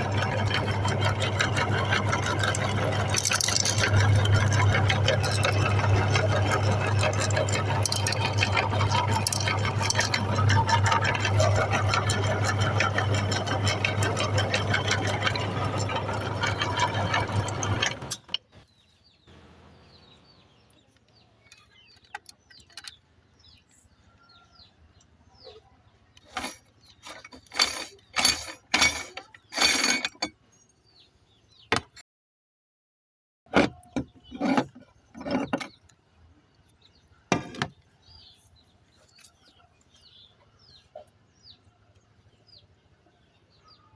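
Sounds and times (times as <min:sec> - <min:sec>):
electric meat grinder running: 0:00.0 - 0:18.2.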